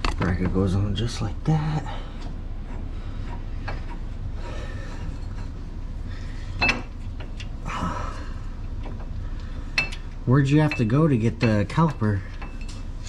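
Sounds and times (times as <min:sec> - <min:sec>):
low steady hum: 0:00.0 - 0:13.0
metal tools clinking: 0:09.8 - 0:13.0.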